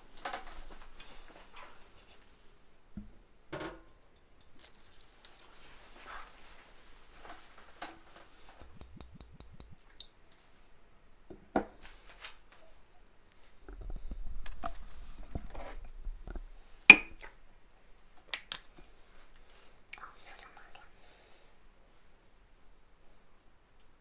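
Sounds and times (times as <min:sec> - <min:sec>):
dish clinking: 0:16.9 - 0:17.2.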